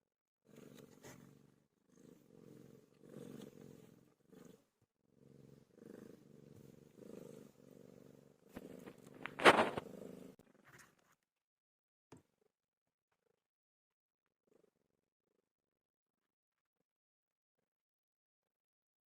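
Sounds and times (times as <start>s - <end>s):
cat purring: 0.4s - 11.2s.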